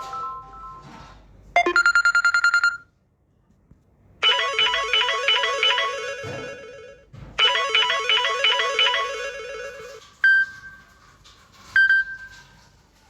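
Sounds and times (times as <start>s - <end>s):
phone ringtone melody: 1.6s - 2.8s, 4.2s - 10.0s.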